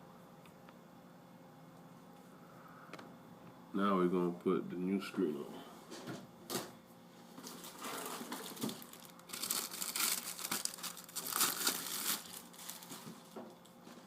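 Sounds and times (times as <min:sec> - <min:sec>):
plastic wrapping crinkling: 0:07.4 - 0:14.0.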